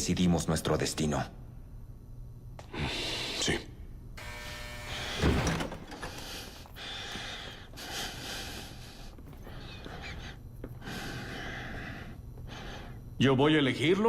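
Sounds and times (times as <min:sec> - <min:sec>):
person breathing heavily: 0:05.9 - 0:13.2.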